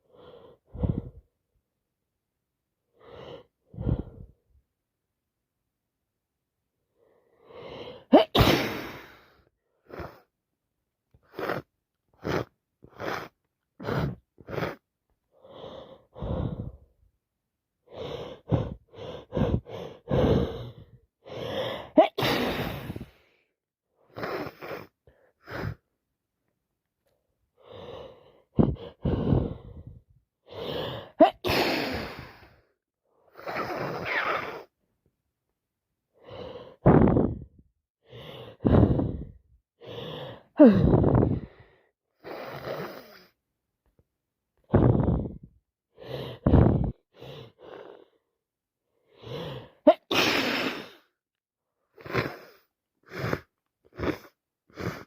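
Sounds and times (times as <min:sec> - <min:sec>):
woman sneezing: 0:08.1 - 0:09.1, 0:21.9 - 0:23.0, 0:31.2 - 0:32.2, 0:49.9 - 0:50.9.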